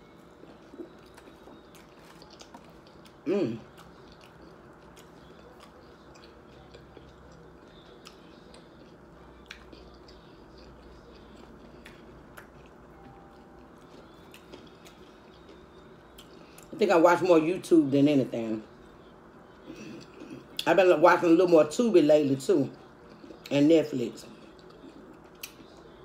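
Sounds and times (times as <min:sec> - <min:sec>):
chewing food: 0:00.0 - 0:16.9, 0:22.6 - 0:26.0.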